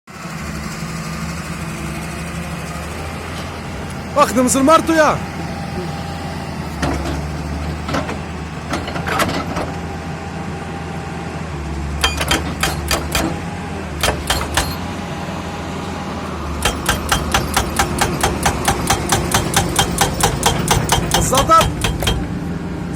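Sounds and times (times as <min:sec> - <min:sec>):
excavator diesel engine running: 0:00.1 - 0:22.9
sharp metallic knocks: 0:12.0 - 0:13.4, 0:14.0 - 0:14.9, 0:16.6 - 0:22.4.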